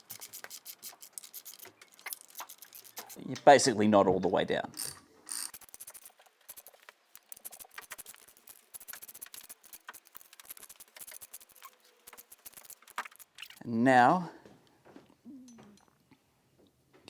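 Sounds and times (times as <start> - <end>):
hand tools clicking on metal: 4.7 - 13.6.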